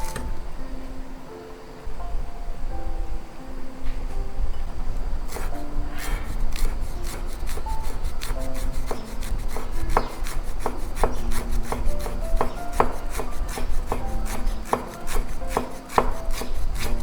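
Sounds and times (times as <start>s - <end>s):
knife chopping on wooden board: 0.0s - 0.3s, 5.3s - 17.0s.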